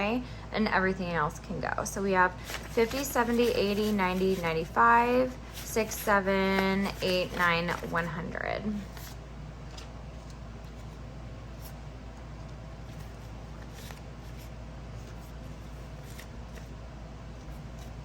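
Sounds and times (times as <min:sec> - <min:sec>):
steady low hum: 0:00.0 - 0:18.0
banknotes rustling and flicking: 0:02.2 - 0:18.0.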